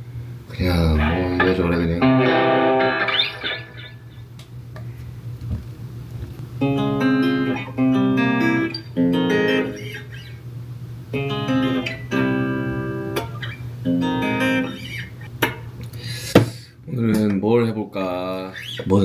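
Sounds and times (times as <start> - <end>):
guitar playing ringing notes: 0.6 - 4.2, 6.6 - 10.4, 11.1 - 15.8.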